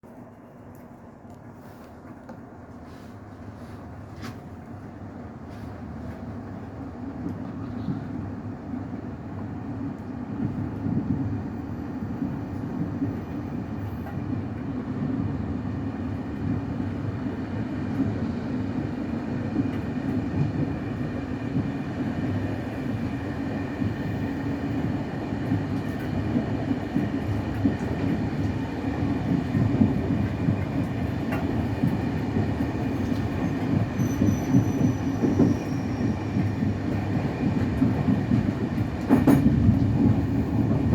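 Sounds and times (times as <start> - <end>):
train wheels rumbling on rail: 0.1 - 40.9
faint high wheel squeal: 33.4 - 36.6.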